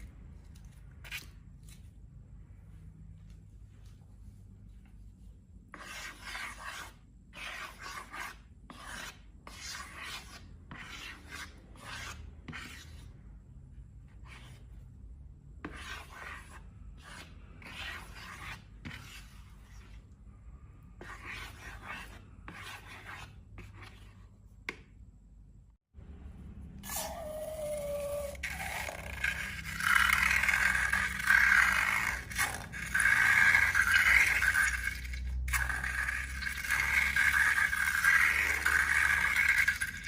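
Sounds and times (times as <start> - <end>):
slime rasping and rubbing: 26.8 - 40.0.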